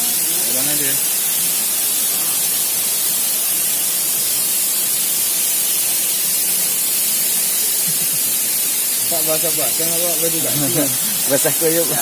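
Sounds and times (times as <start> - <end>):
waterfall rushing: 7.8 - 12.0.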